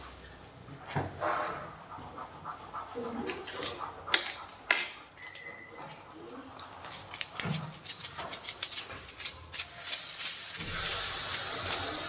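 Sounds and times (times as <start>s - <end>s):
faint beep: 5.2s - 5.8s.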